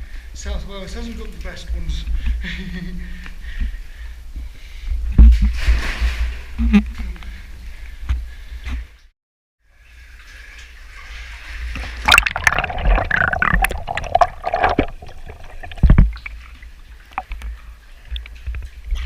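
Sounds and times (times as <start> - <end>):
water gurgling and sloshing: 9.7 - 19.0.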